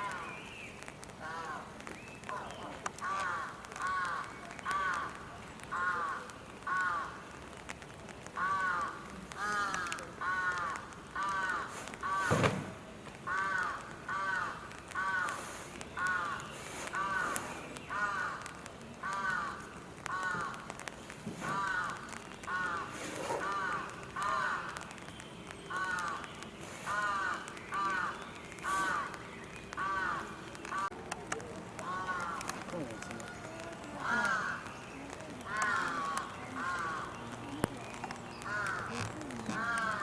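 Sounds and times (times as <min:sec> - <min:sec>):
bird calling: 0:08.3 - 0:40.0
sharp knock: 0:12.2 - 0:12.8.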